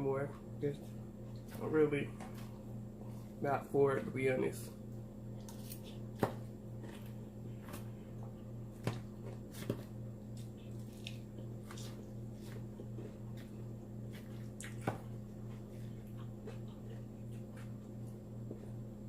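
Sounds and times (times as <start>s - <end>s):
chewing salad crunches: 9.2s - 18.0s.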